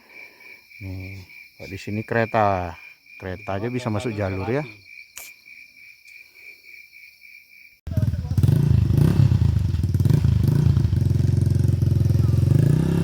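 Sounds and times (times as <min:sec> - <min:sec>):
insects chirping: 0:00.0 - 0:12.7
dirt bike engine revving: 0:07.9 - 0:13.0.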